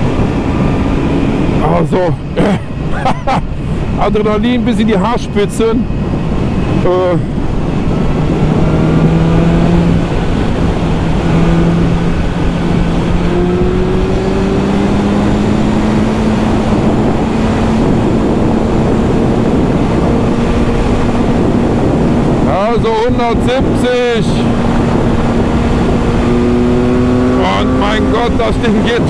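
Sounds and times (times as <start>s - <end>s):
heavy wind rush: 0.0s - 29.0s
motorcycle engine pulling hard: 6.7s - 29.0s.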